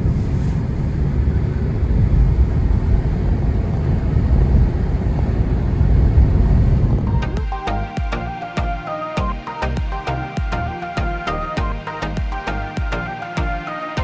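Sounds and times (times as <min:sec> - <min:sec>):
road and engine rumble in car: 0:00.0 - 0:07.4
music: 0:07.1 - 0:14.0.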